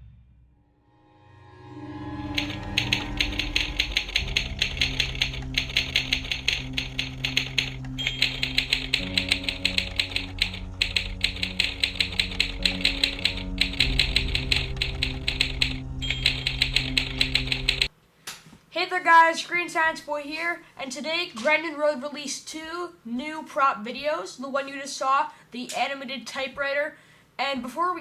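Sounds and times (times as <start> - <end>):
background music of low notes: 0.0 - 17.9
typewriter key strikes: 2.4 - 17.9.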